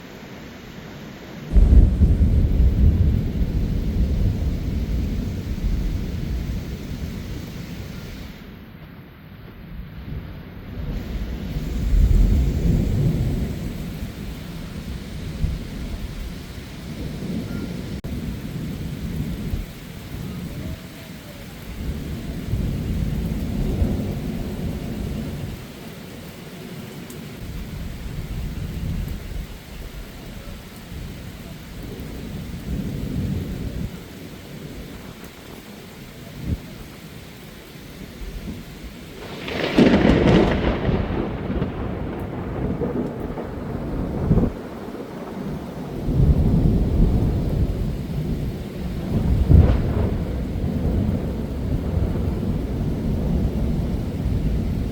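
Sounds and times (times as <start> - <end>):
heavy rain: 0.0 - 54.9
thunder rumbling: 1.4 - 54.9
loud thunderclap: 1.5 - 8.4, 9.8 - 20.8, 21.7 - 25.6, 31.0 - 34.0, 38.2 - 54.9.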